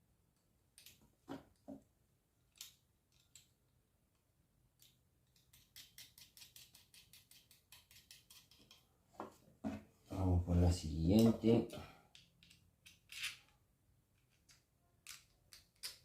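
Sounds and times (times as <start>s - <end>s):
metallic clicks of small fasteners: 0.7s - 1.0s, 2.5s - 3.6s, 4.8s - 8.9s, 12.1s - 13.6s, 14.2s - 16.0s.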